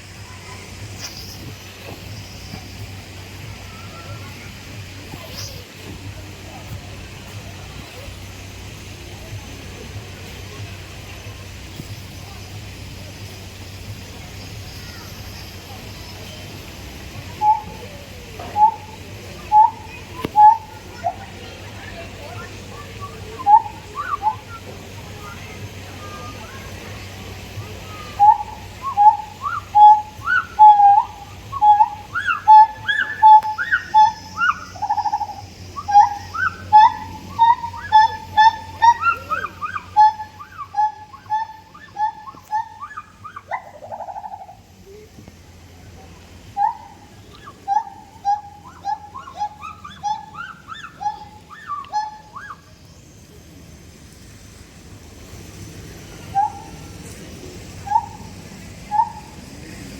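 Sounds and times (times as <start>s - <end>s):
gibbons whooping calls: 17.3s - 26.8s, 27.4s - 45.1s, 46.4s - 53.4s, 55.6s - 59.9s
rattling trill call: 22.4s - 24.6s, 27.9s - 44.7s, 46.5s - 53.2s, 55.5s - 59.5s.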